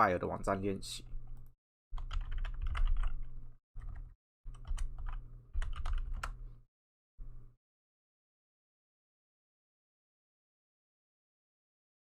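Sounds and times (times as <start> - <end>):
typing on computer keyboard: 2.0 - 6.4
low steady hum: 7.2 - 7.6.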